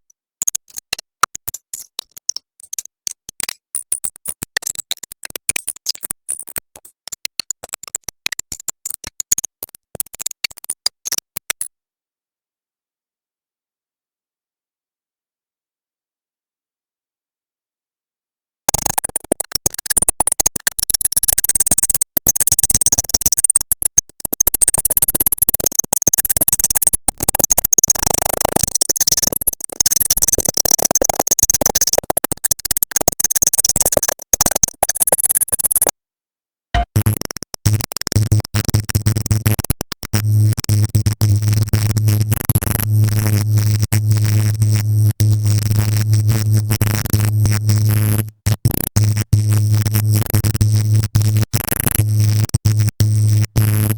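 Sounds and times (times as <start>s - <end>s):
rapid chopped clicks: 18.7s - 35.9s.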